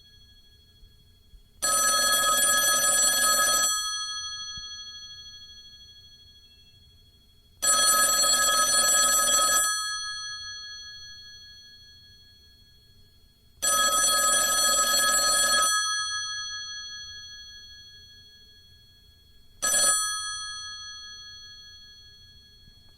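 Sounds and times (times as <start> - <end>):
telephone bell ringing: 1.6 - 6.1, 7.6 - 12.6, 13.6 - 19.0, 19.6 - 22.9.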